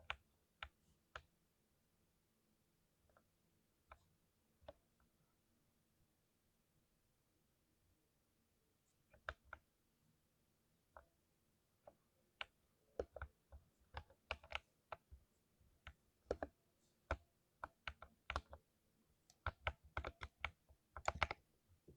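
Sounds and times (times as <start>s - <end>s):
mechanical keyboard typing: 17.7s - 18.6s, 19.3s - 21.4s.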